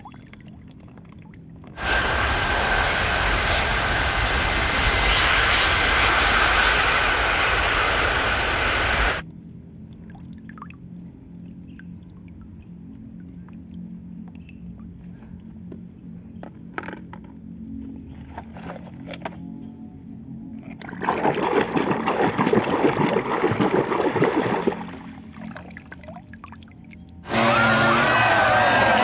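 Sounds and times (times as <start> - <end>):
water pouring and splashing: 20.8 - 26.5.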